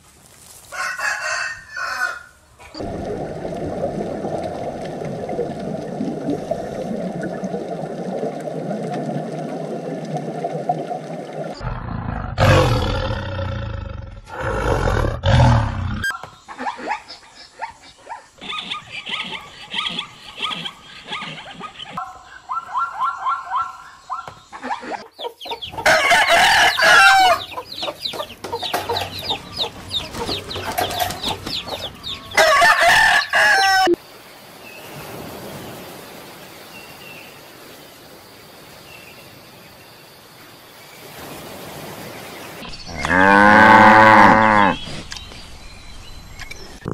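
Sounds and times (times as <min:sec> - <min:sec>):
roosters crowing: 0:00.7 - 0:02.4, 0:25.6 - 0:34.0
chicken calls: 0:16.0 - 0:34.0.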